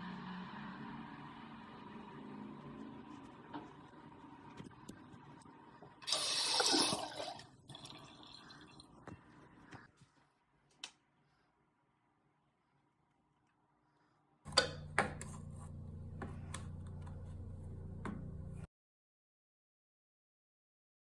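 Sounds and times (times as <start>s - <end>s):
water running from a tap: 6.0s - 8.8s.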